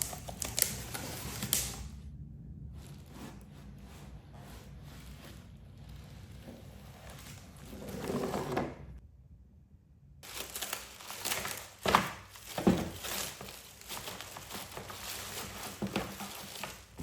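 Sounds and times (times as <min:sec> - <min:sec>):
plastic bags crinkling: 0:00.0 - 0:01.9, 0:10.2 - 0:17.0.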